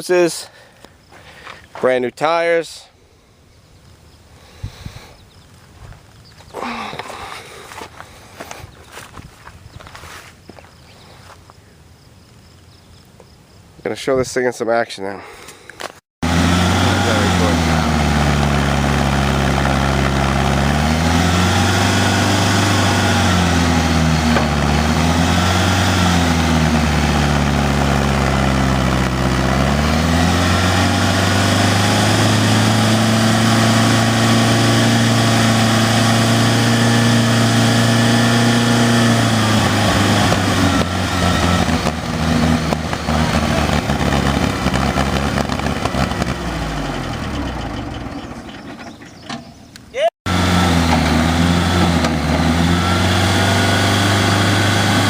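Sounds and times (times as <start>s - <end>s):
backhoe engine revving: 6.5s - 9.1s, 16.2s - 55.0s.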